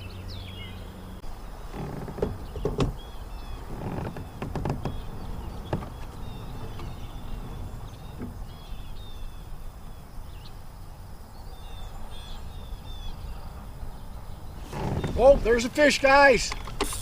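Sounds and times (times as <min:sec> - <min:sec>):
birds chirping: 0:00.0 - 0:17.0
light knocks: 0:01.7 - 0:08.9
steady low rumble: 0:02.3 - 0:10.8.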